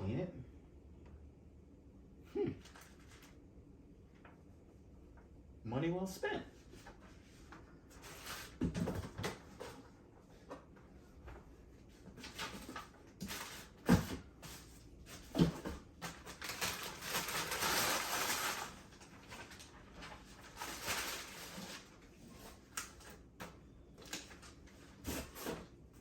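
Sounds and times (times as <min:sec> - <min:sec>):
packaging rustling and crinkling: 0:12.2 - 0:23.2, 0:24.0 - 0:25.7.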